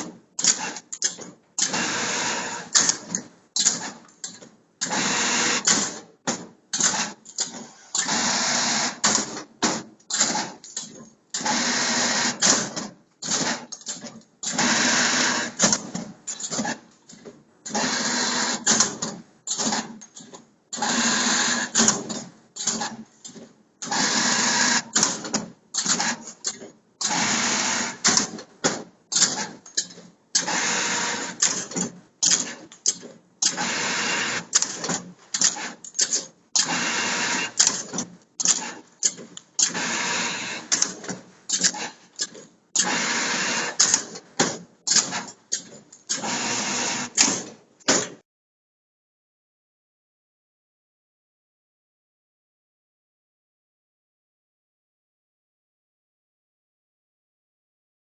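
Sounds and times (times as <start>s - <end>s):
wire-forming machine running: 0.0s - 16.9s, 17.7s - 48.2s
machine clicks and clacks: 0.0s - 48.2s.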